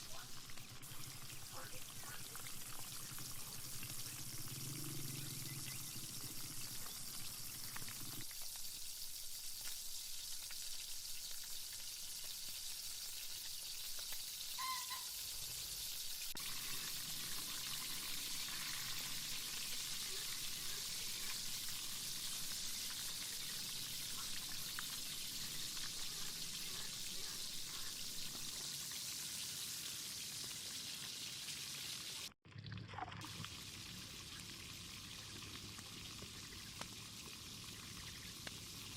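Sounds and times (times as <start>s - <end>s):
chicken sizzling in hot oil: 0.0s - 32.6s, 33.2s - 38.9s
brief high chirp: 14.6s - 15.1s.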